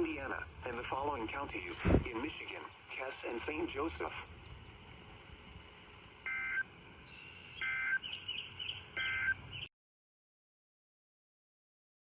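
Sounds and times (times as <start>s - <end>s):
faint chirps: 4.9s - 9.7s
two-tone digital data bursts: 6.3s - 8.0s.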